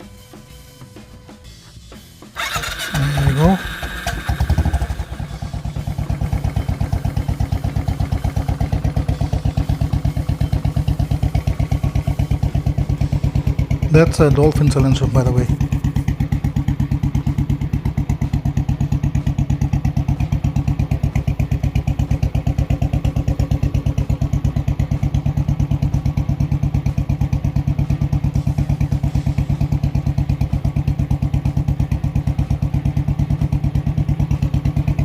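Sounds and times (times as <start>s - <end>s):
motorcycle engine idling: 0.0s - 35.0s.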